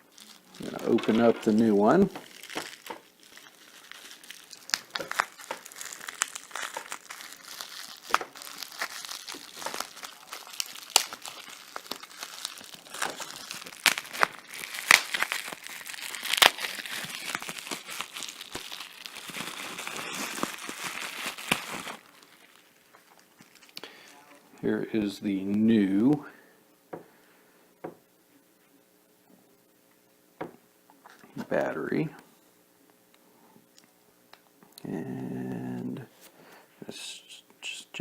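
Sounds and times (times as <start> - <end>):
sharp crackles and clicks: 0.0 - 23.9
packaging crinkling and tearing: 0.0 - 24.2.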